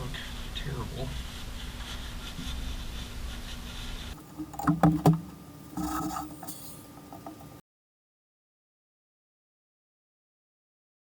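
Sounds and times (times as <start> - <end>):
steady workshop hum: 0.0 - 7.6
metal parts knocking and clinking: 4.2 - 7.6.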